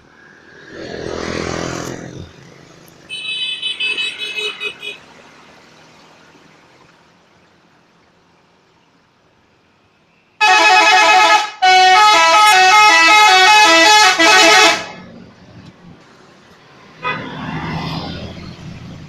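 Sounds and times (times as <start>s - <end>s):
bus horn playing melody: 10.4s - 15.0s, 17.0s - 17.3s.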